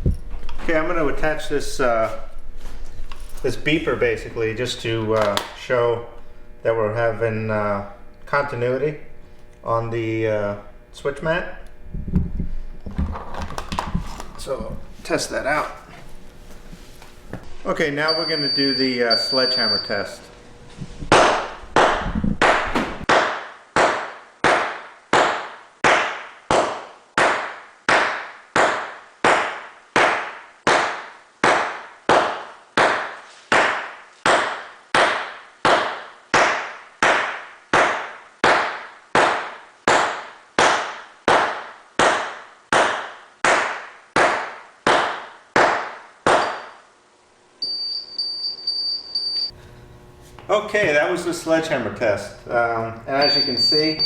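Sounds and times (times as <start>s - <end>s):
high-pitched electronic beep: 18.1s - 20.1s, 47.6s - 49.5s, 53.2s - 54.0s
sledgehammer pounding a mat: 21.1s - 46.8s.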